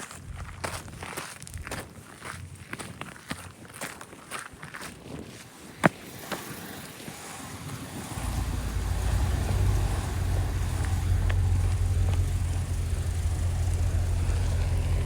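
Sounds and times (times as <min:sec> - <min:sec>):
car engine rumbling: 0:06.2 - 0:15.0.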